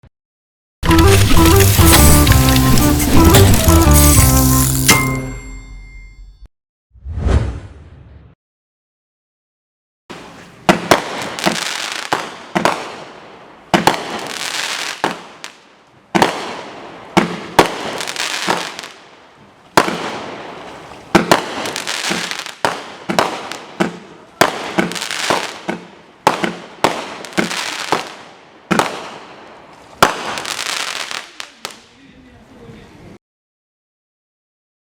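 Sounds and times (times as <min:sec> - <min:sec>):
firework crackle: 0:00.9 - 0:04.9, 0:10.8 - 0:13.0, 0:13.8 - 0:15.6, 0:17.5 - 0:19.0, 0:21.3 - 0:23.7, 0:24.4 - 0:28.2, 0:30.0 - 0:31.9
firework bangs: 0:01.4 - 0:05.0, 0:10.1 - 0:19.0, 0:19.7 - 0:29.4, 0:30.0 - 0:31.8.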